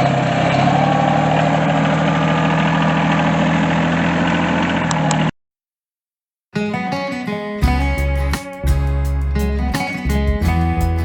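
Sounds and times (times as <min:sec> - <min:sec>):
tractor engine running: 0:00.0 - 0:05.3.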